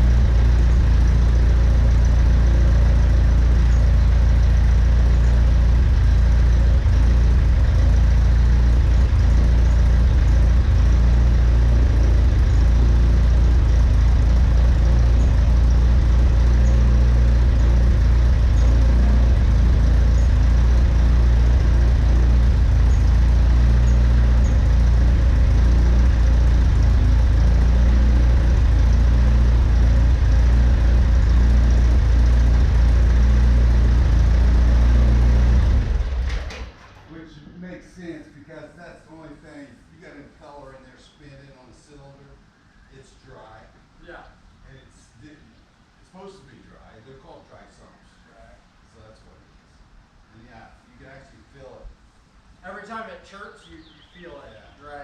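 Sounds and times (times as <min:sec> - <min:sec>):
engine running steadily: 0:00.0 - 0:37.6.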